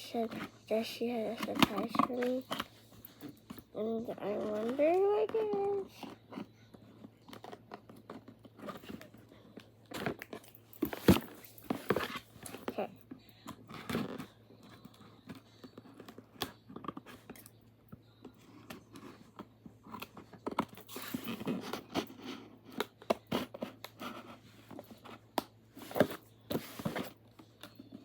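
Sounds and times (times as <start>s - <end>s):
cardboard and plastic tearing: 9.9s - 12.8s.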